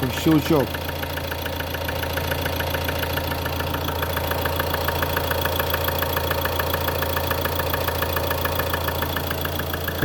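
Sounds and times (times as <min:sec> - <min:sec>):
diesel engine idling: 0:00.0 - 0:10.0.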